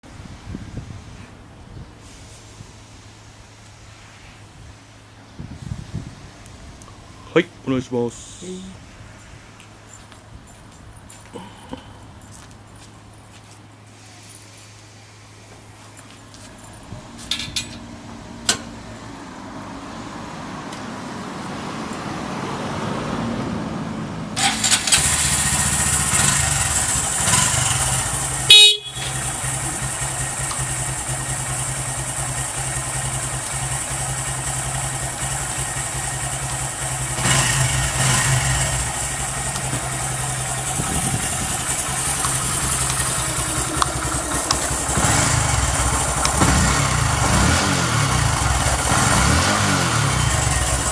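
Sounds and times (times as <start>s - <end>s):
motorcycle engine starting and idling: 16.0s - 19.0s, 24.3s - 50.9s.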